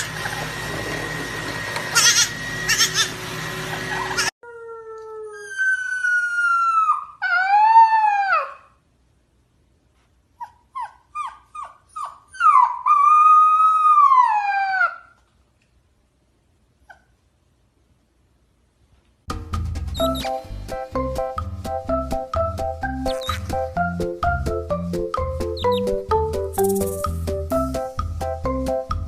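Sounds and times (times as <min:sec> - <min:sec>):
dog yipping: 0:02.0 - 0:03.1, 0:03.7 - 0:04.3, 0:05.3 - 0:08.8, 0:10.4 - 0:15.3, 0:16.8 - 0:17.2, 0:25.6 - 0:26.0
dog howling: 0:03.9 - 0:08.8, 0:12.4 - 0:15.2.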